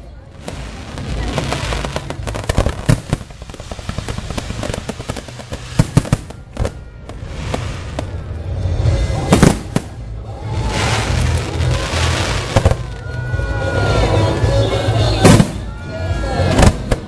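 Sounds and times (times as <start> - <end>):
fireworks blasts: 0.0 - 17.0
fireworks crackling: 0.0 - 17.0.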